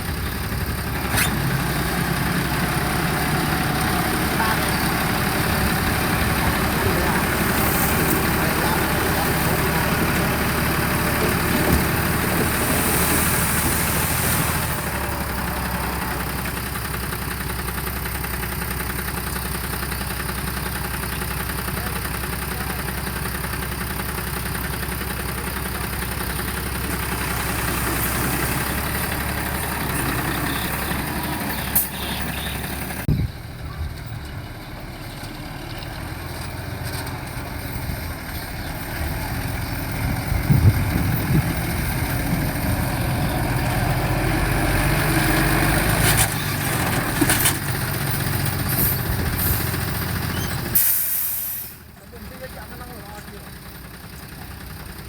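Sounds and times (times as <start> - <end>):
heavy diesel engines idling: 0.0 - 55.0.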